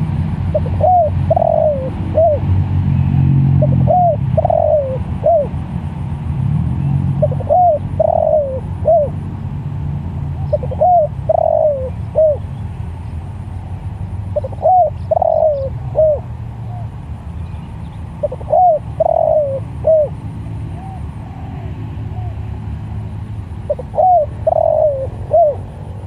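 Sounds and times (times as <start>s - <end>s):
dove cooing: 0.0s - 2.5s, 3.5s - 5.6s, 7.2s - 9.2s, 10.4s - 12.5s, 14.3s - 16.9s, 18.2s - 22.6s, 23.6s - 26.0s.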